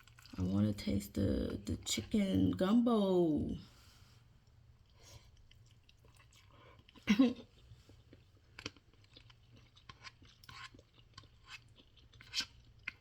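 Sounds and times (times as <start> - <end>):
soft chewing and mouth clicks: 0.0 - 2.3, 4.2 - 13.0.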